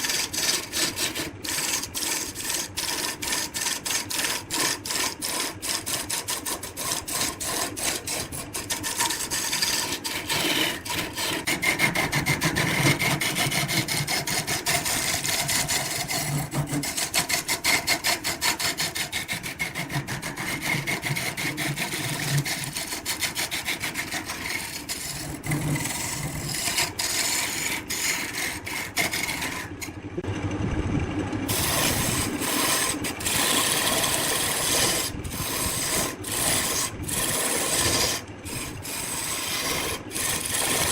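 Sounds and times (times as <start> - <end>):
lathe tool scraping spinning wood: 0.0 - 30.2, 31.5 - 40.9.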